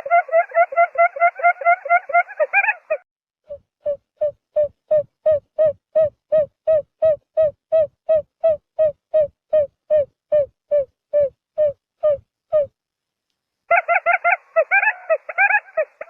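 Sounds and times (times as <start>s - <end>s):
quail calling: 0.0s - 3.0s, 13.7s - 16.0s.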